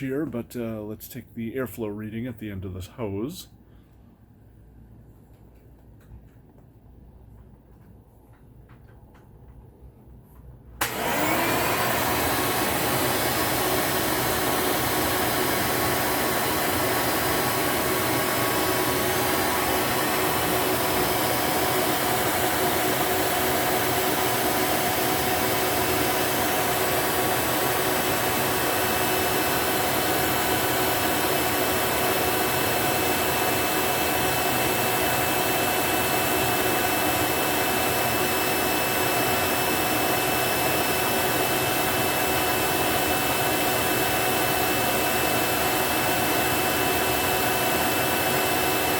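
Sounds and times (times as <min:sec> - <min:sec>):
vacuum cleaner switch click: 0:10.8 - 0:12.6
vacuum cleaner motor running: 0:10.8 - 0:48.9.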